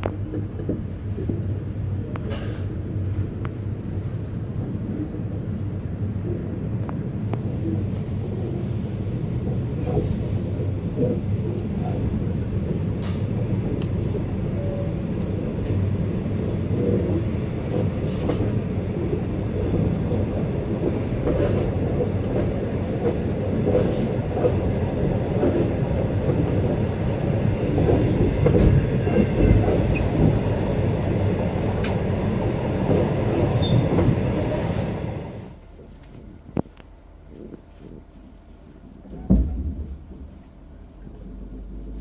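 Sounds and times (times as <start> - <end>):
train wheels rumbling on track: 0.0 - 42.0
clicks of train wheels: 2.1 - 2.8, 13.0 - 14.1, 16.8 - 19.8, 31.8 - 32.0.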